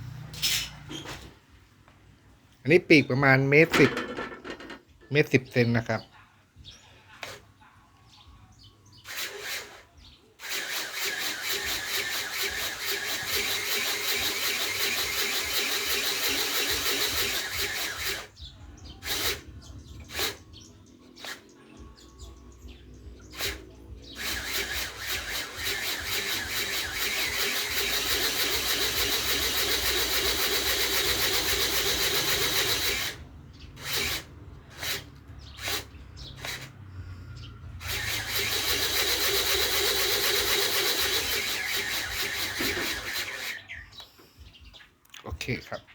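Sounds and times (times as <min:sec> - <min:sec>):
model airplane electric motor whine: 0:09.0 - 0:43.7.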